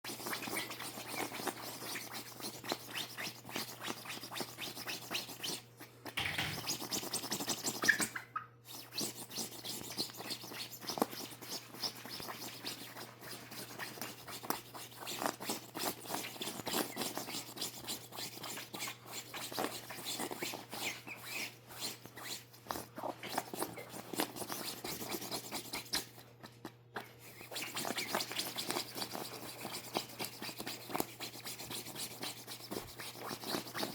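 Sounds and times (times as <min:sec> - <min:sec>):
fingers scratching feathers: 0:00.1 - 0:26.2, 0:27.0 - 0:33.9.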